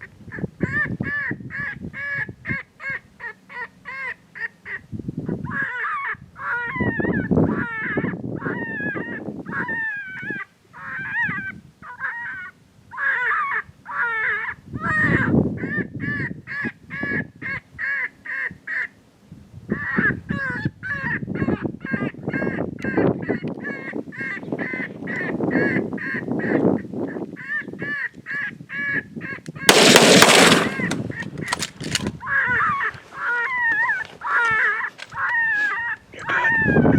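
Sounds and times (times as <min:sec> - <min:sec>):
coyotes yipping and howling: 0:05.4 - 0:12.4, 0:13.0 - 0:15.7, 0:32.2 - 0:36.9.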